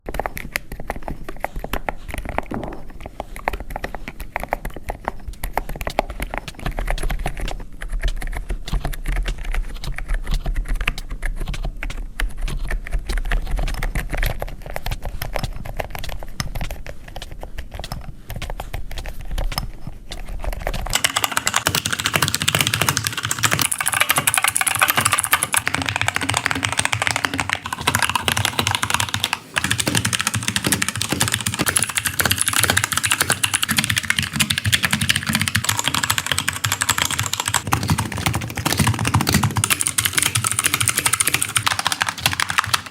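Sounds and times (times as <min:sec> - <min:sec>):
fast typing on keyboard: 0:00.0 - 0:42.9.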